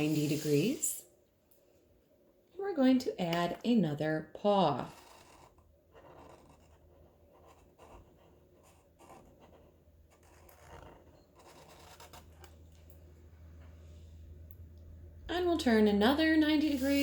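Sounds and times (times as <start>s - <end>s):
marker scratching on paper: 4.8s - 12.4s, 16.6s - 17.0s
low hum: 12.4s - 17.0s.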